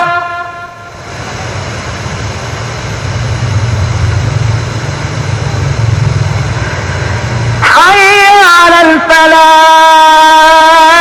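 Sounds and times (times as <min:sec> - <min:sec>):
call to prayer singing: 0:00.0 - 0:00.8, 0:07.6 - 0:11.0
low rumbling noise: 0:00.0 - 0:11.0.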